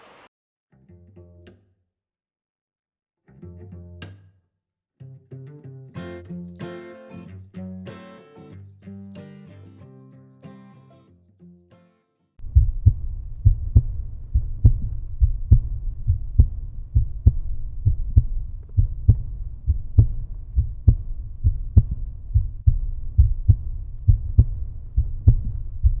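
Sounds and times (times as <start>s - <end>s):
heavy low drum beat: 12.4s - 26.0s.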